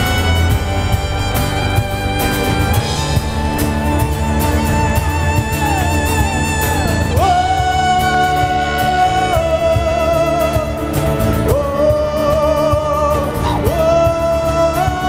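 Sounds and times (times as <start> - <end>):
band playing instrumental: 0.0 - 15.0
sliding lead melody: 0.0 - 15.0.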